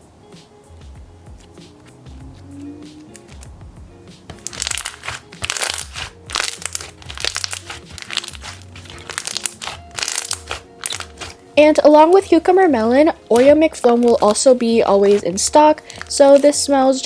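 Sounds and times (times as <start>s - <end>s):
background music: 0.0s - 17.0s
slime crackling and popping: 4.3s - 11.4s, 13.3s - 16.6s.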